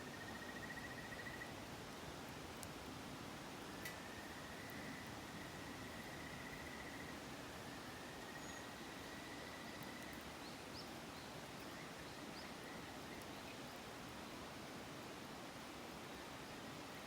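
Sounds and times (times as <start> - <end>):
bonfire crackling: 9.8 - 10.4.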